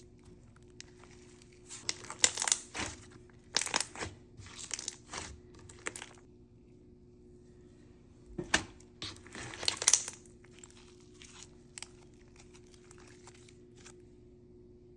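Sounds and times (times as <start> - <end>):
slime crackling when squished: 0.7 - 6.3, 9.0 - 13.8.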